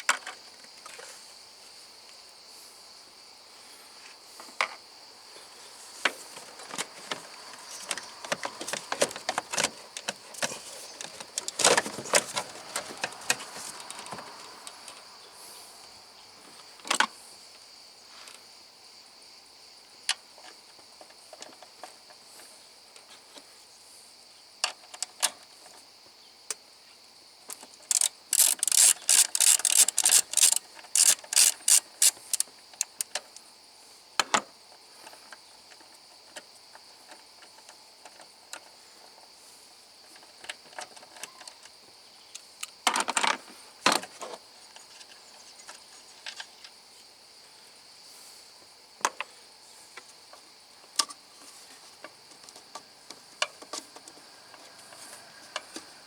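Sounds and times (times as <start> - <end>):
insects chirping: 0.0 - 56.0
hand tools clicking and knocking: 6.4 - 14.7, 27.5 - 33.3
rapid sharp ratchet clicks: 27.8 - 33.1.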